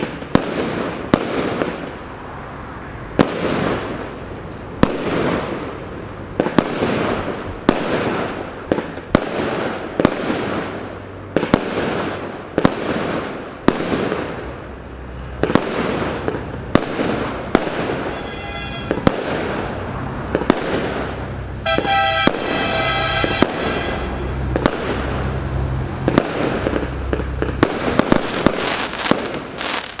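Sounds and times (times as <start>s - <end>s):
fireworks bangs with crackling: 0.0s - 2.1s, 3.1s - 30.0s
fireworks whistle: 17.6s - 19.5s, 21.6s - 25.0s.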